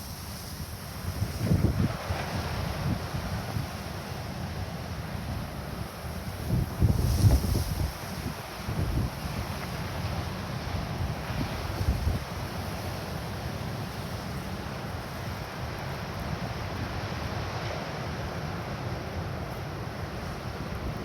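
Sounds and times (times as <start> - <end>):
wind buffeting microphone: 6.4 - 9.6.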